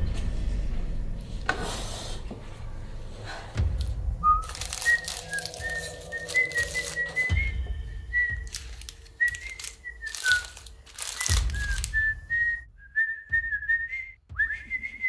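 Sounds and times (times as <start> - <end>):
person whistling a tune: 4.2 - 15.0.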